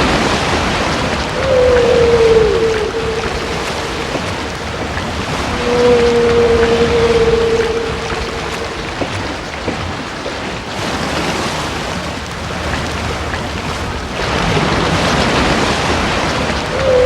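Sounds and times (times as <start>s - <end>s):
rushing ocean water: 0.0s - 17.0s.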